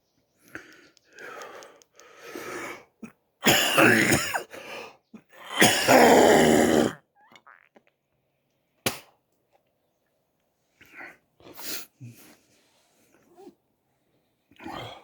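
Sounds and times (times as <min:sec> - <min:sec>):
man coughing: 0:03.4 - 0:04.5, 0:05.5 - 0:06.9.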